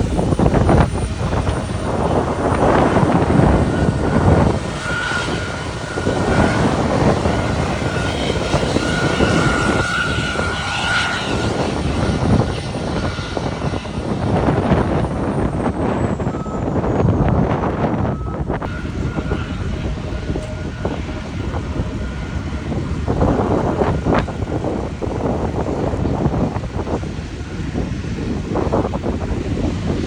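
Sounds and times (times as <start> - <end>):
jet engines rushing with high whine: 0.0 - 30.0.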